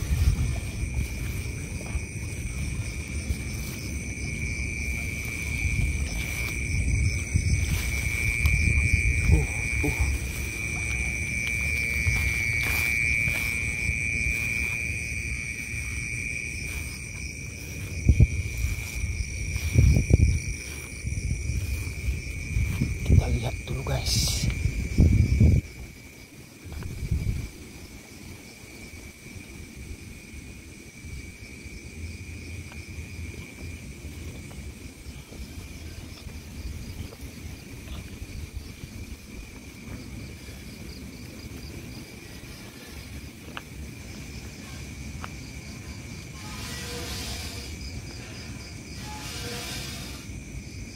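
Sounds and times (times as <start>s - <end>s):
insect trilling: 0.0s - 26.0s, 34.3s - 50.9s
low rumble: 0.0s - 26.0s.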